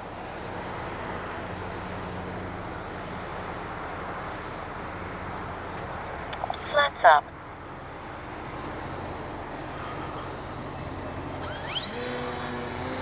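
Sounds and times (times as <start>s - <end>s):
model plane electric motor whir: 11.0s - 13.0s.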